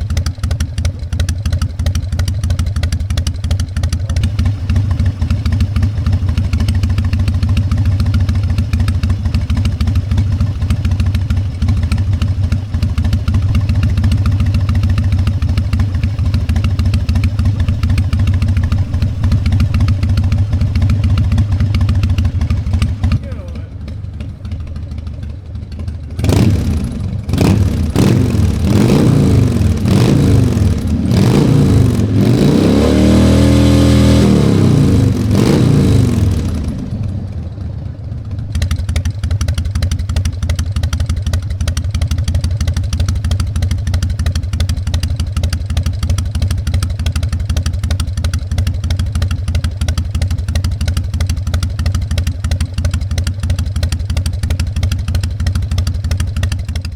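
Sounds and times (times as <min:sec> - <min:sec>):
motorcycle engine revving and idling: 0:00.0 - 0:56.9.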